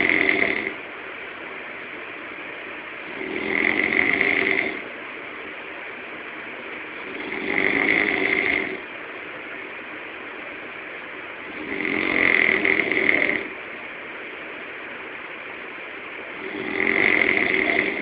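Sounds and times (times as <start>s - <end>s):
man snoring loudly: 0.0s - 0.8s, 3.0s - 4.8s, 7.0s - 8.9s, 11.4s - 13.6s, 16.4s - 18.0s
steady hiss: 0.0s - 18.0s.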